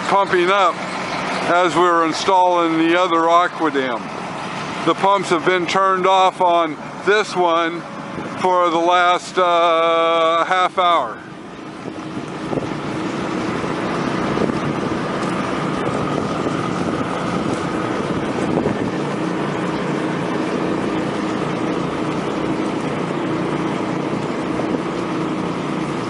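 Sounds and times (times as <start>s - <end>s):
engine running steadily: 0.0s - 26.0s
wind noise on microphone: 8.0s - 8.5s, 11.4s - 26.0s.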